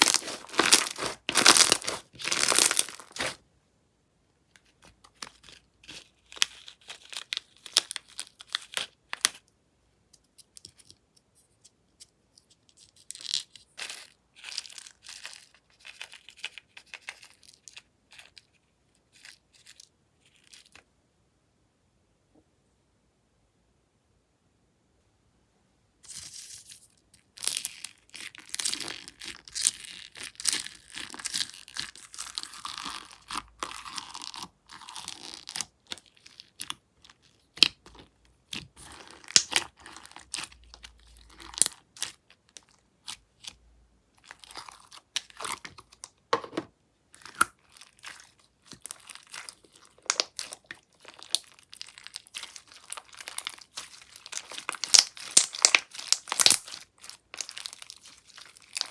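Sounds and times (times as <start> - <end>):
slime crackling and popping: 0.0 - 3.4, 27.4 - 43.2, 47.2 - 58.9.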